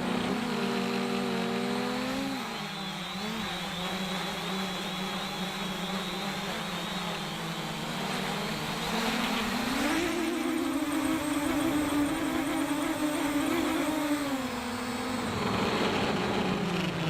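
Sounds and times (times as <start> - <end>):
quadcopter propellers humming: 0.0 - 17.0.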